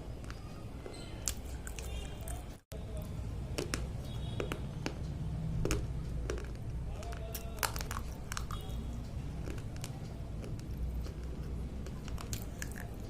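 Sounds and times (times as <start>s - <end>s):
pencils being chewed and crunched: 1.2s - 2.6s, 4.4s - 13.0s.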